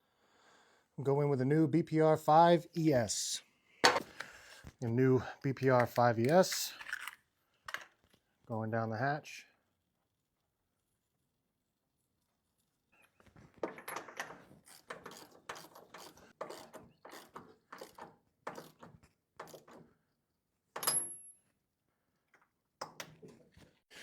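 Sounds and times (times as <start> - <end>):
ratchet wrench ratcheting: 14.6 - 18.8.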